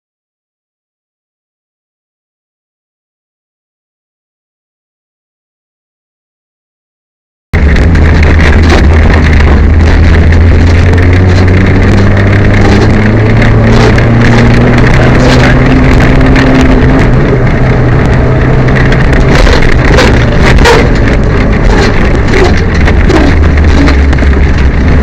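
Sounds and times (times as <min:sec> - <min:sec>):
car engine pulling hard: 0:07.6 - 0:25.0
engine misfire: 0:07.6 - 0:25.0.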